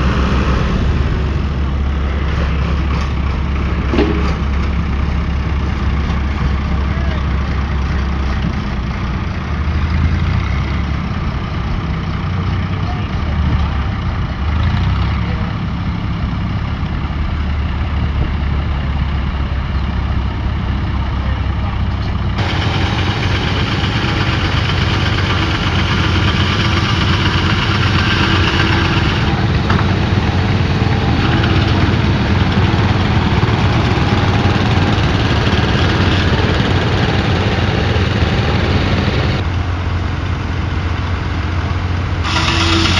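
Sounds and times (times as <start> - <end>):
engine idling with low hum: 0.7 - 42.9
loud hissing noise: 42.2 - 42.9.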